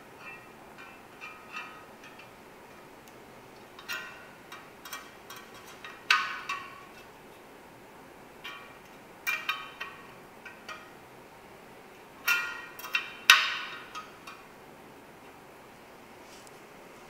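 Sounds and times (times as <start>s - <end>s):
metallic clicks of bicycle spokes: 0.2s - 7.1s, 8.4s - 11.0s, 12.2s - 14.5s.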